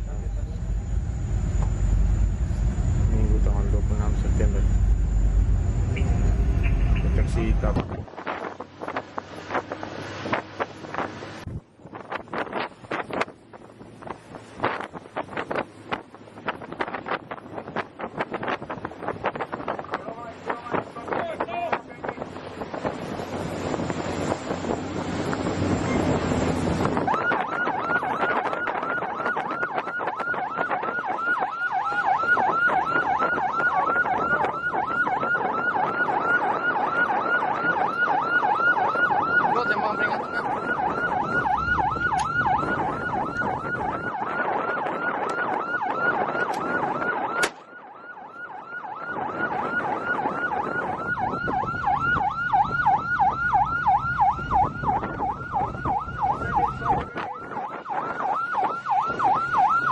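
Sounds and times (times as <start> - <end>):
wind noise: 0.0 - 59.9
siren on fast yelp: 25.7 - 59.9.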